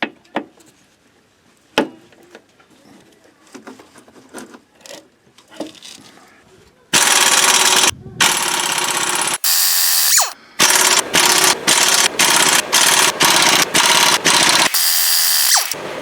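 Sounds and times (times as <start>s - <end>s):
pneumatic impact wrench: 7.0s - 15.8s.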